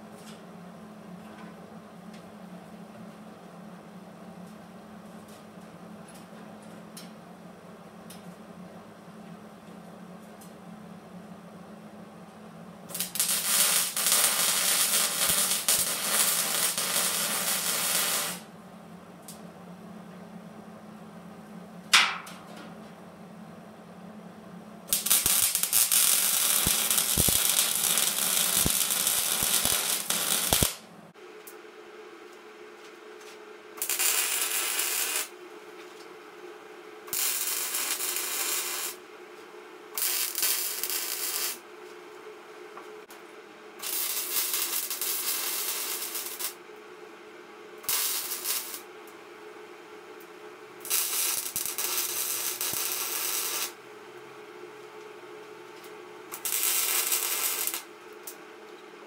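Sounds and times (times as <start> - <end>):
welder arcing crackle: 12.9 - 18.5, 24.9 - 30.9, 33.8 - 35.3, 37.1 - 39.0, 40.0 - 41.6, 43.8 - 46.6, 47.8 - 48.9, 50.8 - 53.8, 56.3 - 58.4.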